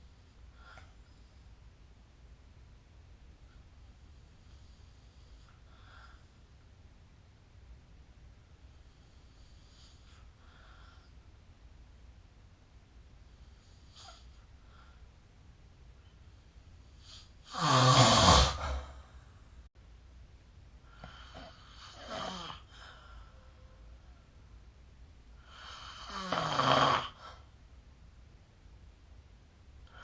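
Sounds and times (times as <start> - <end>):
person snoring: 17.0 - 19.2, 21.0 - 23.0, 25.4 - 27.4.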